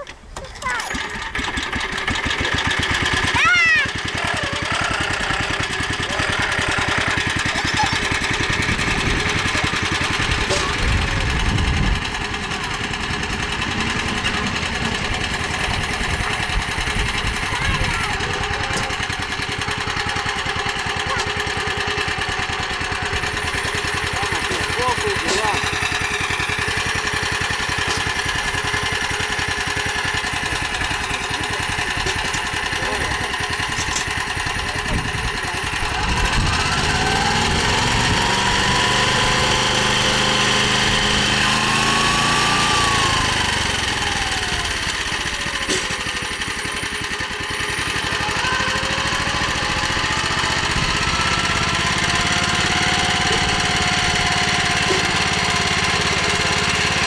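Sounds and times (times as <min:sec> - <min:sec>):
walk-behind tractor engine running: 0:00.0 - 0:57.0.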